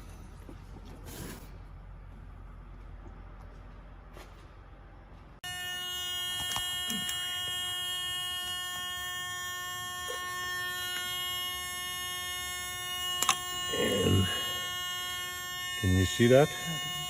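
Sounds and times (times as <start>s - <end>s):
electronic buzzing tone: 5.4s - 17.0s
small clicks: 13.2s - 13.4s.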